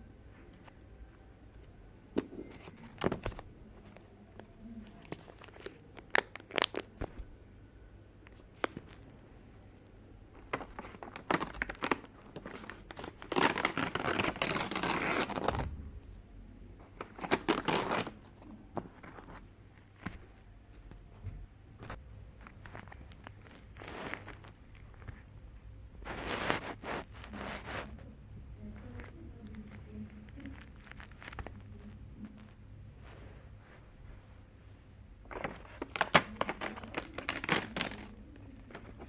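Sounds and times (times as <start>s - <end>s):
paper tearing and crinkling: 10.4s - 15.7s, 16.9s - 18.3s, 22.5s - 25.1s, 26.0s - 27.9s, 35.3s - 39.0s.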